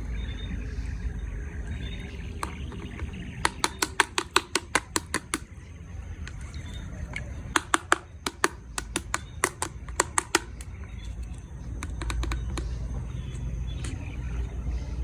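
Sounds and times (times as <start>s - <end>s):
sharp clicks: 7.1s - 14.0s.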